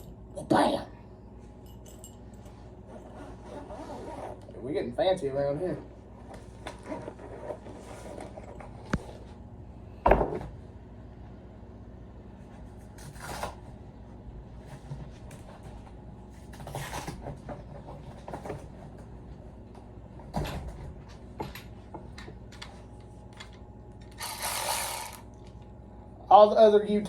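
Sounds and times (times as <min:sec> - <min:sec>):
object thumping on workbench: 0:10.0 - 0:10.5.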